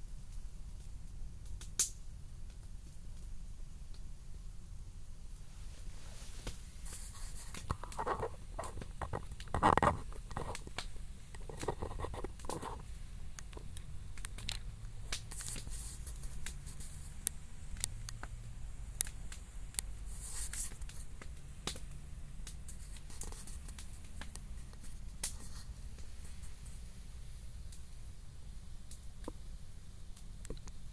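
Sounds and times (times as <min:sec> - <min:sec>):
campfire crackling: 0:00.0 - 0:30.9
rustling: 0:05.3 - 0:18.3.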